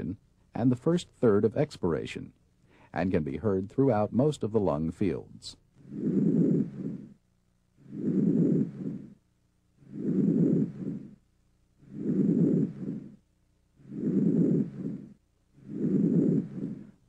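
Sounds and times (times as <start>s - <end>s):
breath sounds through stethoscope: 2.6s - 3.0s, 9.8s - 11.2s, 11.8s - 13.2s, 13.8s - 17.0s.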